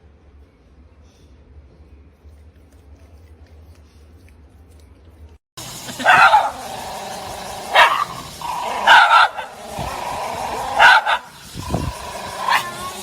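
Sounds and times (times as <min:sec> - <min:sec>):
dog barking: 0:05.9 - 0:06.7, 0:07.7 - 0:11.4, 0:12.2 - 0:13.0.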